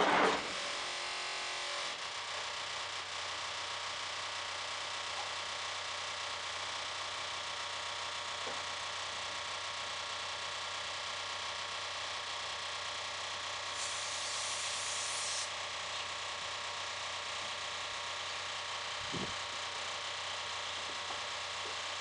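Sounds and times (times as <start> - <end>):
loud high hiss: 13.8 - 15.5.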